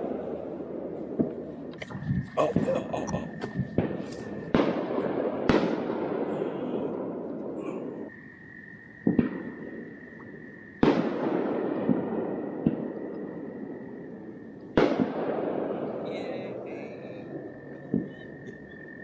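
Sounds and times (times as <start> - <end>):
loud bangs: 1.2 - 8.1.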